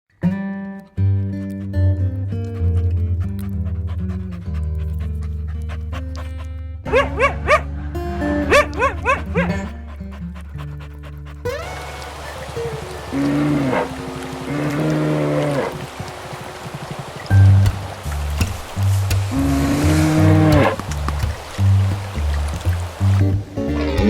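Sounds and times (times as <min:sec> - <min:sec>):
background music: 0:00.2 - 0:16.0, 0:17.2 - 0:24.0
plucked string chords: 0:05.9 - 0:15.3, 0:17.3 - 0:24.0.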